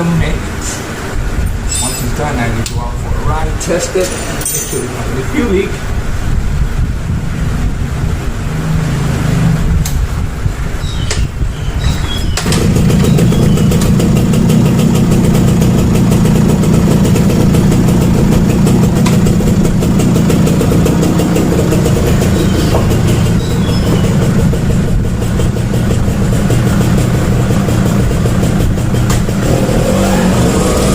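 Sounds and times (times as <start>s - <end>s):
two-stroke motorcycle engine running: 12.4s - 30.9s.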